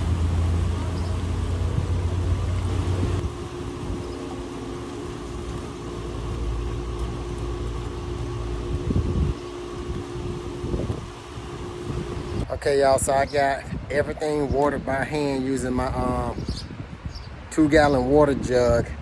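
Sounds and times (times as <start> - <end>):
machine-like hum: 0.0 - 12.6
wind buffeting microphone: 0.0 - 19.0.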